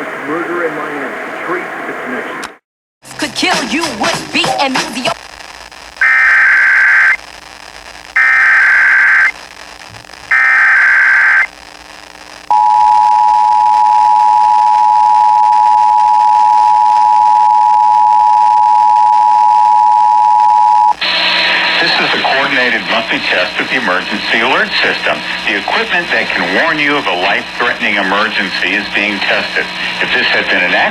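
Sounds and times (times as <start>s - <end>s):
digital header bursts: 10.2s - 11.5s.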